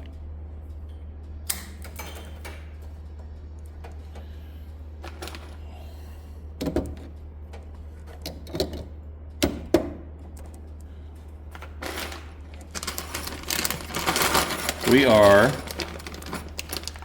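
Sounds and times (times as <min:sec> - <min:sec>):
steady low hum: 0:00.0 - 0:17.0
tools and plastic parts clicking: 0:11.6 - 0:17.0.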